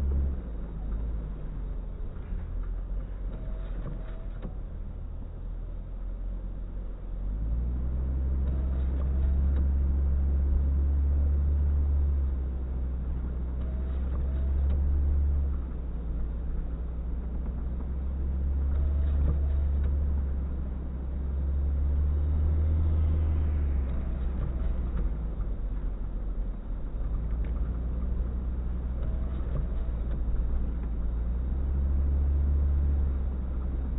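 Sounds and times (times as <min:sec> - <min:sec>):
vehicle engines rumbling: 0:00.0 - 0:33.9.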